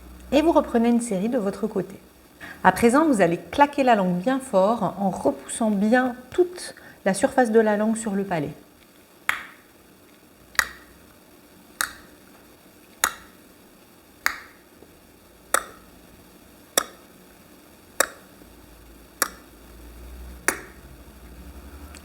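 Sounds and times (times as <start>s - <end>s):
tongue clicks: 9.3s - 9.6s, 10.5s - 11.0s, 11.8s - 12.2s, 13.0s - 13.4s, 14.2s - 14.6s, 15.5s - 15.9s, 16.8s - 17.1s, 18.0s - 18.3s, 19.2s - 19.5s, 20.5s - 20.8s.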